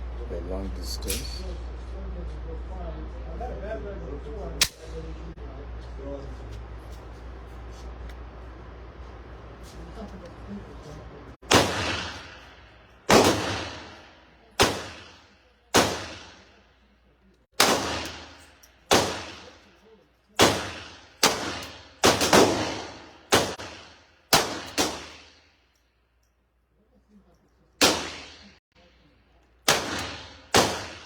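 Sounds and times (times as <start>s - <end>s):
pistol shots with echo: 11.4s - 16.6s, 17.6s - 19.7s, 20.4s - 25.4s, 27.8s - 28.6s, 29.6s - 31.0s.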